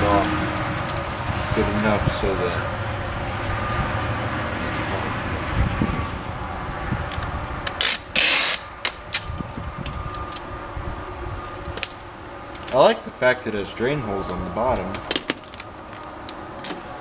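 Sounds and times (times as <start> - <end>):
box tape rasping off roll: 7.6 - 9.4.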